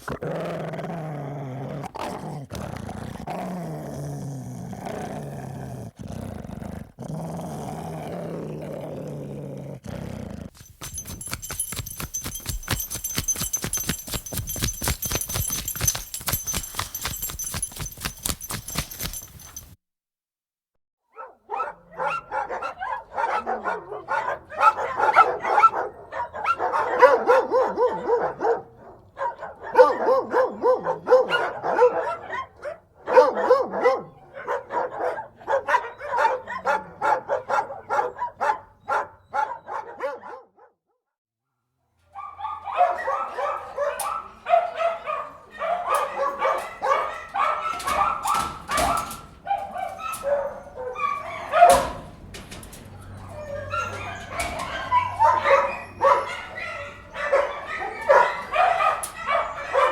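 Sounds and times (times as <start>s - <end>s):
dog collar tag jingling: 10.5s - 19.8s, 43.0s - 59.9s
dogs barking and whining indoors: 10.5s - 19.8s, 21.1s - 40.8s, 41.9s - 59.9s
many dogs barking outdoors: 21.1s - 40.8s, 42.0s - 59.9s.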